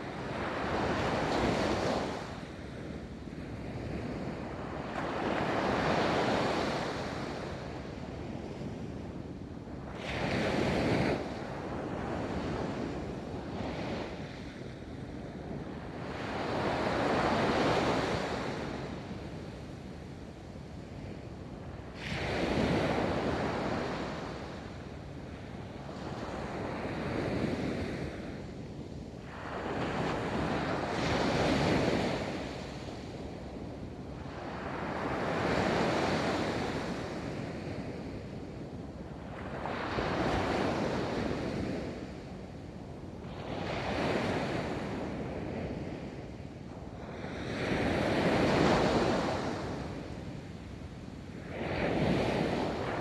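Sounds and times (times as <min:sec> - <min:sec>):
ocean waves on a beach: 0:29.3 - 0:53.0.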